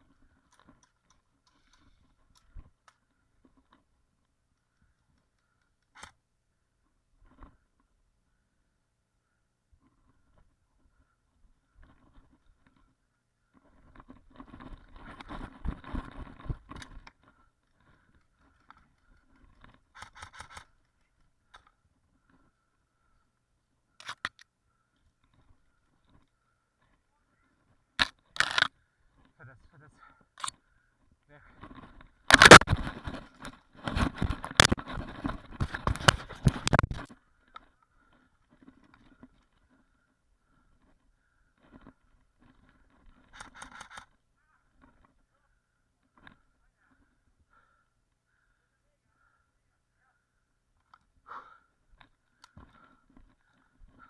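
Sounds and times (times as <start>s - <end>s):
sharp clicks: 18.1s - 21.8s, 28.0s - 28.7s, 32.3s - 32.9s.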